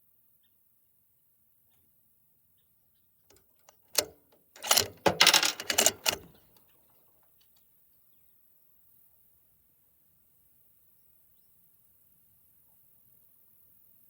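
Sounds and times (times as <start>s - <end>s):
rifle bolt clicking and rattling: 3.3s - 6.4s.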